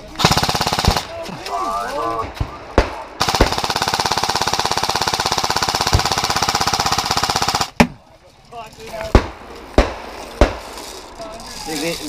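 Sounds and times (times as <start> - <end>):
airsoft machine gun firing: 0.2 - 1.2, 2.8 - 7.8.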